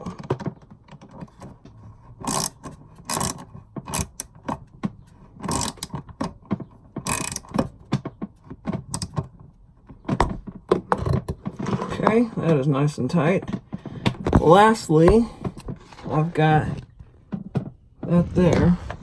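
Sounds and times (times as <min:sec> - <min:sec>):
hose clamp clicking: 0:07.0 - 0:07.6.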